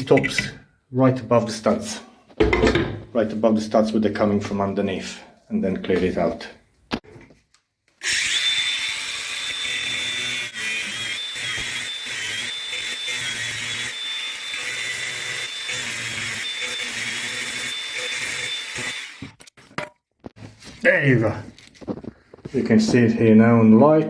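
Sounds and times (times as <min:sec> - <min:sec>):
angle grinder cutting metal: 0:08.0 - 0:19.6.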